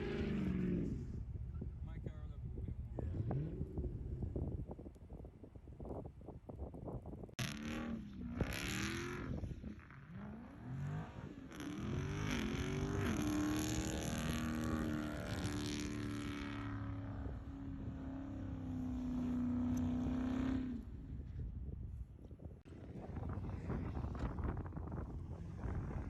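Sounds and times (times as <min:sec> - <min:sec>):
car engine revving: 0:07.4 - 0:21.0.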